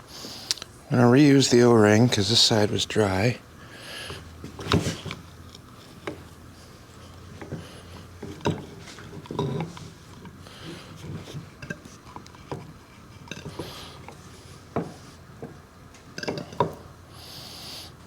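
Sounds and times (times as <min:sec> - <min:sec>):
metal clinks and knocks: 0:16.2 - 0:16.9
rubbing hiss: 0:17.1 - 0:18.0.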